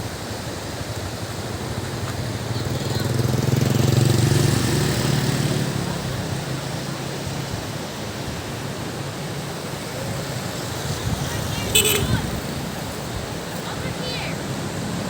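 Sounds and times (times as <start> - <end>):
motor vehicle engine humming: 0.1 - 15.0.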